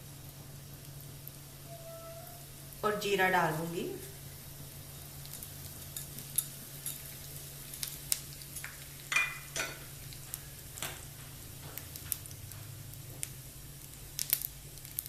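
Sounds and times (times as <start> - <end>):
low steady hum: 0.0 - 14.9
seeds crackling in hot oil: 0.0 - 15.0
scraping in a pan: 1.6 - 2.6.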